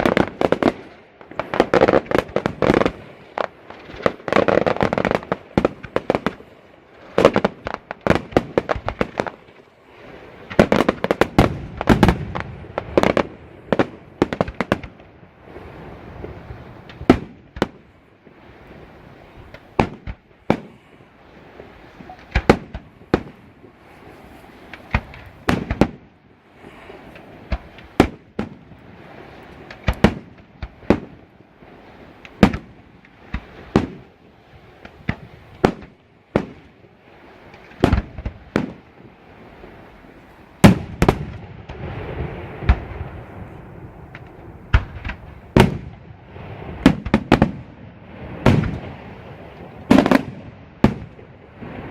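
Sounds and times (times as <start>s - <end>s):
crackling rumble: 0.0s - 51.9s
firework shells bursting: 21.9s - 23.5s, 24.6s - 28.8s, 29.4s - 31.3s, 40.6s - 46.1s.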